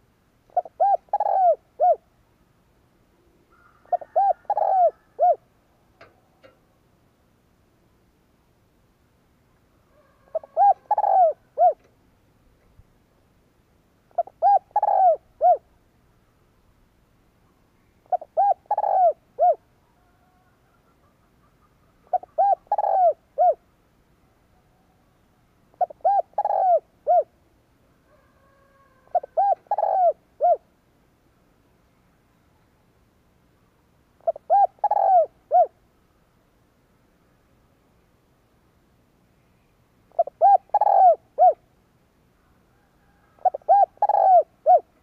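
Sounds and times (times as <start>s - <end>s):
dove cooing: 0.5s - 2.1s, 3.2s - 5.5s, 9.9s - 12.0s, 14.1s - 15.7s, 18.0s - 23.6s, 25.7s - 27.4s, 28.0s - 30.7s, 34.2s - 35.8s, 40.1s - 41.7s, 42.7s - 45.0s.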